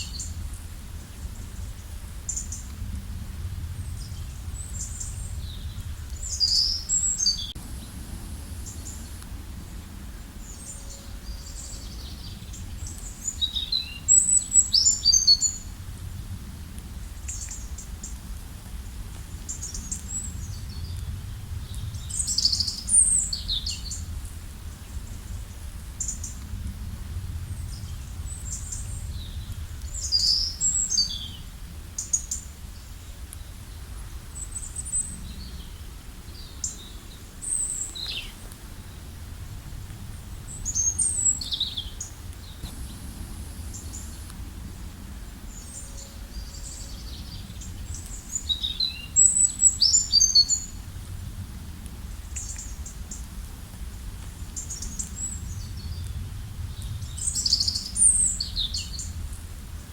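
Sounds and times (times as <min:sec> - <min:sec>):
steady low rumble: 0:00.0 - 0:59.9
small birds chirping: 0:03.7 - 0:15.7, 0:27.5 - 0:33.6, 0:34.4 - 0:39.1, 0:40.2 - 0:50.8.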